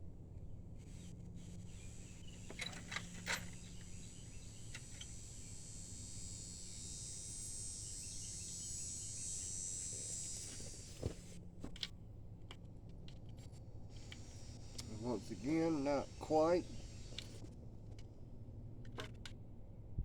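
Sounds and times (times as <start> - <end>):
steady low hum: 0.0 - 20.0
high insect-like drone: 0.9 - 11.2, 13.9 - 17.5.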